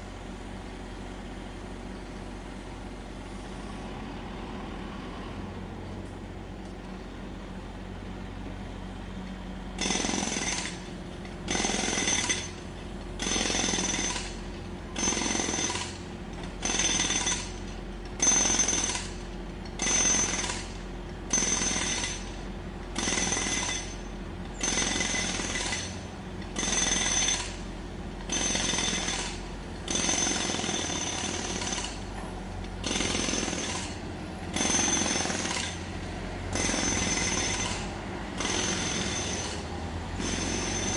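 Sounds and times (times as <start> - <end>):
low engine hum: 0.0 - 9.8
jackhammer bursts: 9.8 - 10.9, 11.5 - 12.6, 13.2 - 14.4, 15.0 - 19.2, 19.8 - 22.4, 23.0 - 26.0, 26.6 - 27.6, 28.3 - 32.0, 32.8 - 35.9, 36.5 - 40.9.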